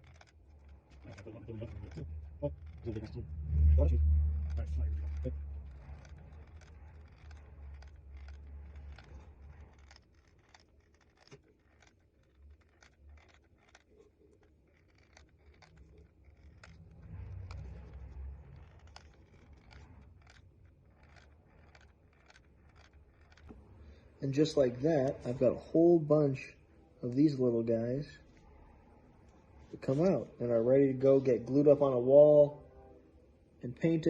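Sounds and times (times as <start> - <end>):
handling clicks and scratches: 0.0 - 32.4
low rumble: 0.5 - 10.7, 15.6 - 26.7.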